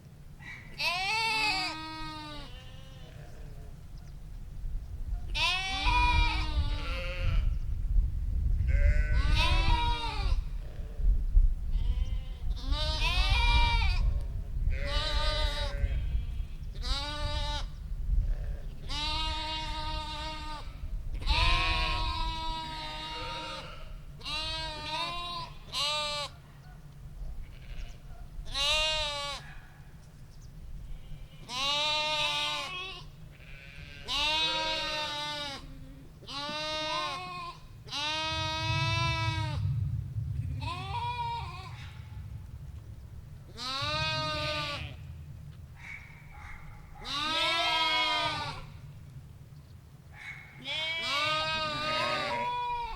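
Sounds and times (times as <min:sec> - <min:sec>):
sheep bleating: 0:00.8 - 0:03.5, 0:05.4 - 0:07.5, 0:08.7 - 0:10.9, 0:11.7 - 0:14.1, 0:14.7 - 0:17.7, 0:18.4 - 0:26.3, 0:27.5 - 0:29.4, 0:31.0 - 0:39.6, 0:40.6 - 0:41.8, 0:43.5 - 0:45.1, 0:47.0 - 0:48.8, 0:50.6 - 0:52.9
steady low rumble: 0:02.7 - 0:26.2, 0:35.7 - 0:52.9.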